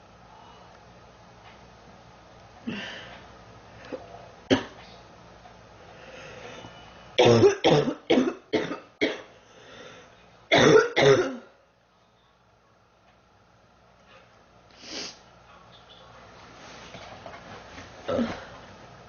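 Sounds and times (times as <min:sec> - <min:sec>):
girl coughing: 0:07.2 - 0:09.3, 0:10.5 - 0:11.5.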